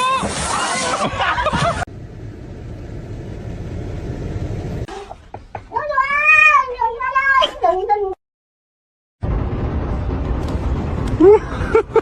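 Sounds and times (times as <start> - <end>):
low steady rumbling: 1.6 - 4.9, 9.2 - 12.0
cat meowing loudly: 5.8 - 7.4.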